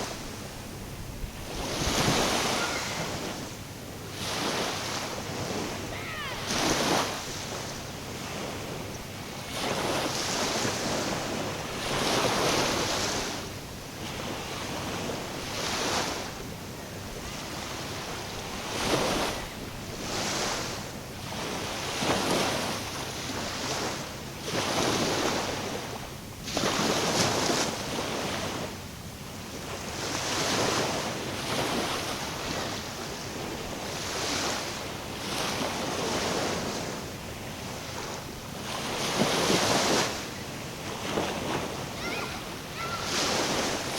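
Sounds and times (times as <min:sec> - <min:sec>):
wind on microphone: 0:00.0 - 0:17.5
waves washing in: 0:00.0 - 0:43.9.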